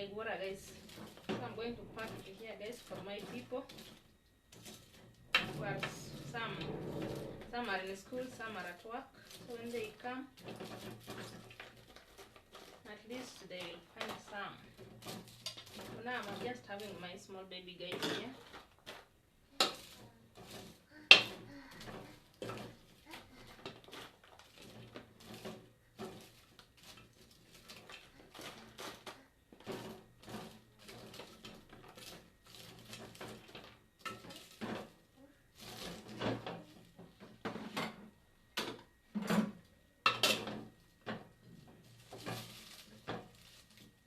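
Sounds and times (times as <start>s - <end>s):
dishes and utensils clinking: 38.6s - 41.2s.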